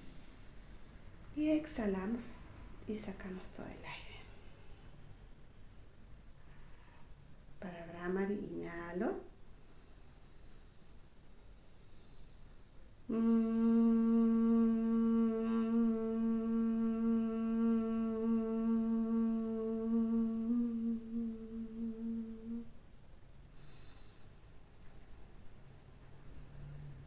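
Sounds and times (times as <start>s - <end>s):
short breath: 6.4s - 7.2s, 9.6s - 12.8s, 23.5s - 24.6s
woman humming: 13.1s - 22.8s.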